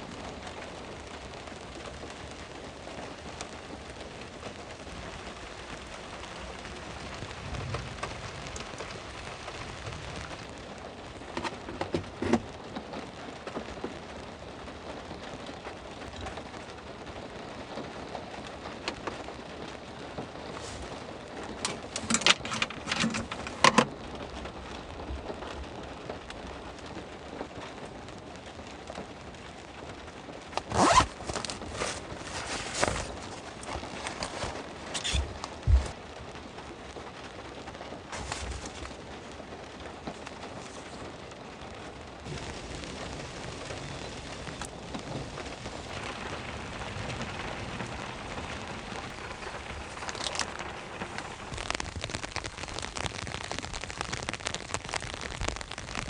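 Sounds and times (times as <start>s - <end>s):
rain falling: 0.0s - 56.0s
sharp clicks and knocks: 21.6s - 23.9s.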